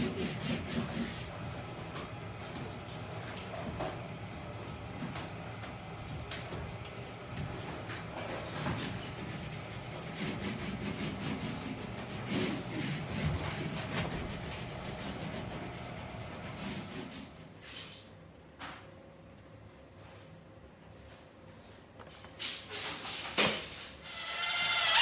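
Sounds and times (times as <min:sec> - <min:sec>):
hand tool scraping wood: 0:00.0 - 0:01.4, 0:08.5 - 0:17.4.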